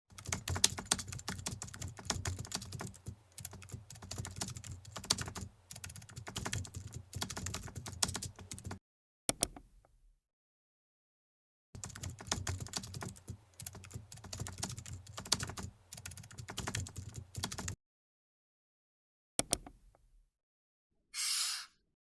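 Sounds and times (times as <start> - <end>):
computer keyboard typing: 0.1 - 8.8, 11.8 - 17.8.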